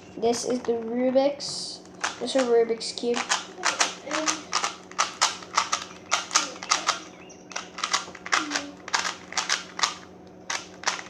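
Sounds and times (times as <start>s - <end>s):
puzzle cube layers clacking: 3.1s - 11.0s.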